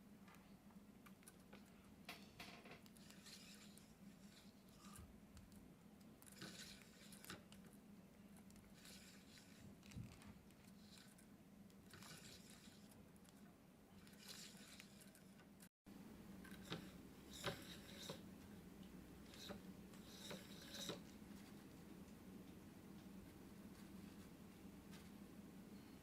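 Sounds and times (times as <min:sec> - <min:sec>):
low steady hum: 0:00.0 - 0:26.0
small objects rustling and ticking: 0:00.3 - 0:15.7.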